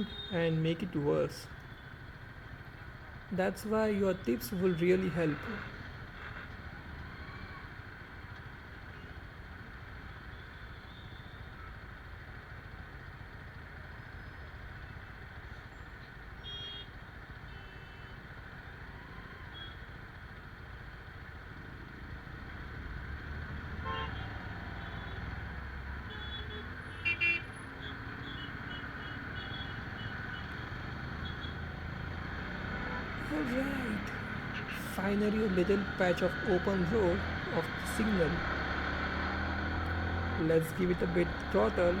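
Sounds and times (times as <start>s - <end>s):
street traffic rumbling: 0.0s - 42.0s
motorcycle engine: 20.4s - 42.0s
vehicle horn toots: 23.8s - 24.3s, 26.1s - 27.6s.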